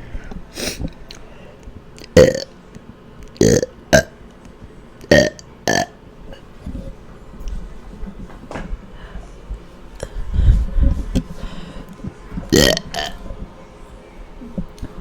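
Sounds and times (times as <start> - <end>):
woman burping: 3.4 - 4.1, 5.1 - 6.0, 12.5 - 13.2.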